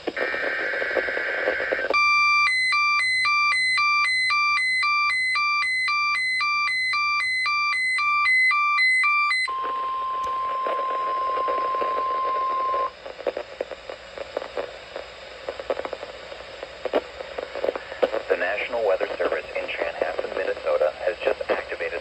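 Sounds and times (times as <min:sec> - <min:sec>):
radio static: 0:00.0 - 0:02.0, 0:09.5 - 0:22.0
two-tone electronic alarm beeping: 0:02.0 - 0:12.9
steady high tone: 0:09.5 - 0:12.9.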